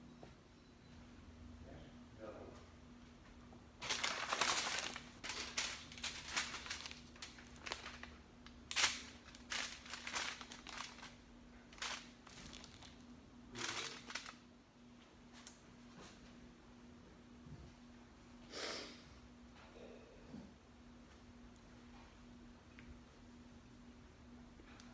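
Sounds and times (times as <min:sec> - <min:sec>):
faint steady hum: 0:00.0 - 0:24.9
crinkling and rustling handling: 0:03.8 - 0:16.3.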